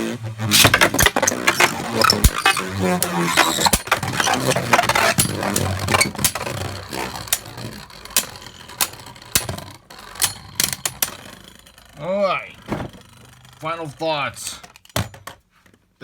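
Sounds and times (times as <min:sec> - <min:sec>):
spinning tops whirring: 0:00.3 - 0:14.2
spinning tops clacking: 0:00.5 - 0:12.4.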